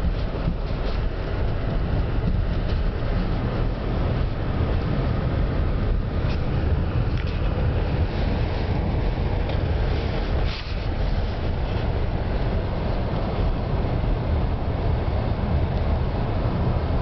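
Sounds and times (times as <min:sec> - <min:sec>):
car rumbling through snow: 0:00.0 - 0:17.0.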